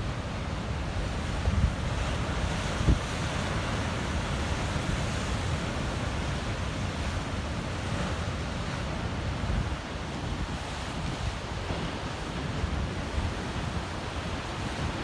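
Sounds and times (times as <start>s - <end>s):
wind on microphone: 1.3s - 5.8s, 7.8s - 15.0s.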